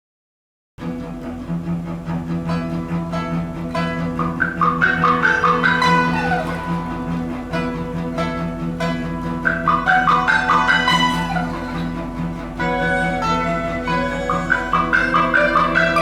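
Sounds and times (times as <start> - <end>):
string and flute ensemble playing: 0.8 - 16.0.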